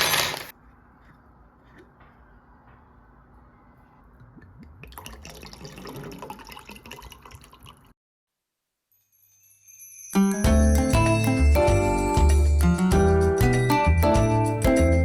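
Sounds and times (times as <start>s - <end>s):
music: 9.0s - 15.0s.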